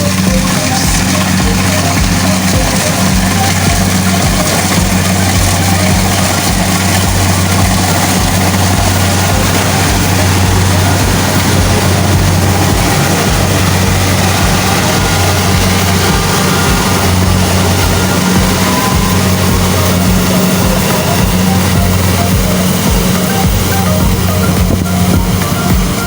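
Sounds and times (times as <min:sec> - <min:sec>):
harvester engine droning: 0:00.0 - 0:26.0.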